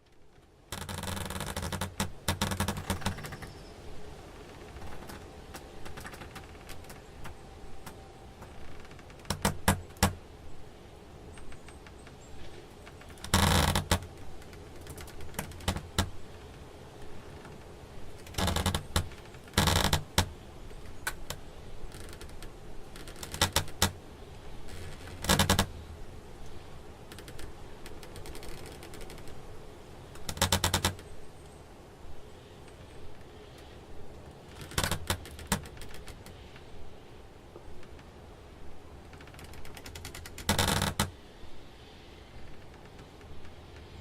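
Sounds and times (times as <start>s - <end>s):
wooden door hinges creaking: 0.0s - 3.6s, 4.4s - 10.2s, 12.8s - 16.6s, 17.3s - 24.0s, 24.7s - 25.8s, 34.5s - 36.6s, 39.0s - 41.2s.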